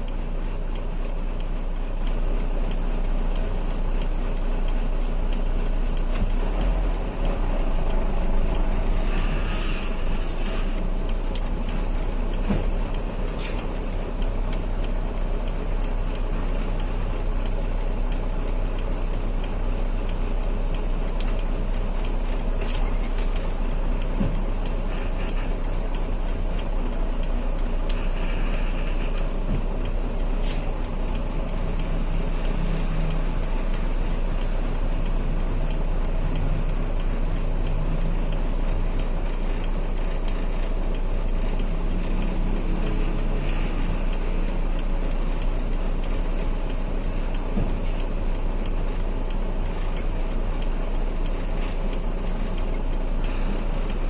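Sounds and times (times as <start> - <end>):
faint regular ticking: 0.0 - 54.0
road noise: 0.0 - 54.0
truck engine running under load: 0.0 - 54.0
short clicks: 27.9 - 31.3.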